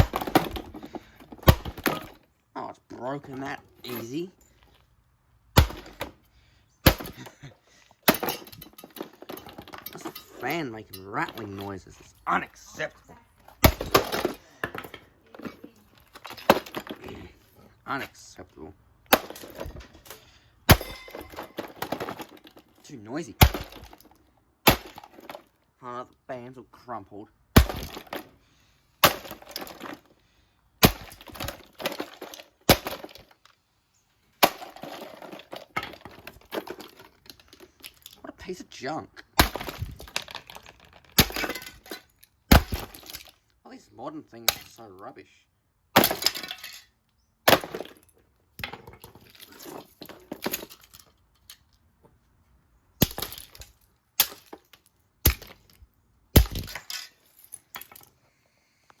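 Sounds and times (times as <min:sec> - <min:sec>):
clatter of breaking parts: 0:00.0 - 0:02.3, 0:06.8 - 0:12.0, 0:13.4 - 0:17.5, 0:19.1 - 0:22.8, 0:23.4 - 0:25.6, 0:29.0 - 0:30.2, 0:30.8 - 0:33.6, 0:34.4 - 0:38.3, 0:39.3 - 0:43.6, 0:46.0 - 0:51.8, 0:53.0 - 0:55.8, 0:56.4 - 0:58.2
broken pieces rattling: 0:06.9 - 0:12.0, 0:13.6 - 0:17.3, 0:19.1 - 0:22.8, 0:29.0 - 0:30.2, 0:30.8 - 0:33.6, 0:34.4 - 0:38.2, 0:39.4 - 0:43.4, 0:46.0 - 0:51.8, 0:53.0 - 0:55.8, 0:56.4 - 0:58.1.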